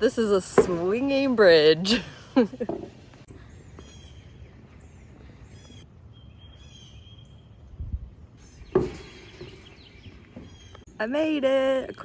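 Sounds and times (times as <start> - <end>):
low outdoor background: 0.0 - 12.0
songbirds chirping: 0.0 - 12.0
sharp thump: 8.7 - 9.7.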